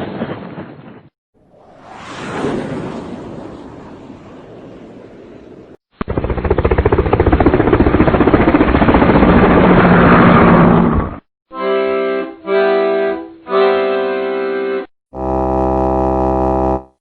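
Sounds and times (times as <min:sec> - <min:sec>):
rumble: 0:00.1 - 0:11.2.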